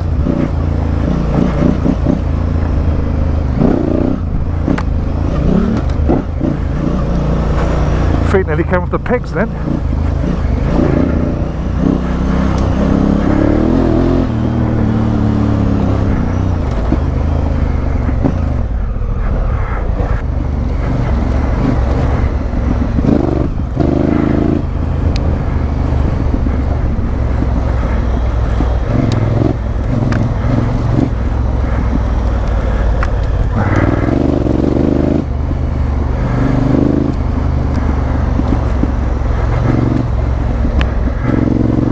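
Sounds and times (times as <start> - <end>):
sharp ticks: 28.4 - 34.2.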